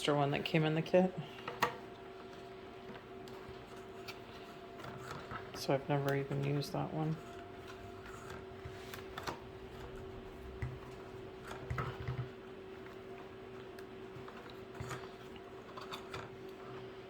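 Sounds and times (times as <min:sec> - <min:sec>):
faint hum: 0:00.0 - 0:17.0
plastic parts clicking and knocking: 0:07.7 - 0:12.4.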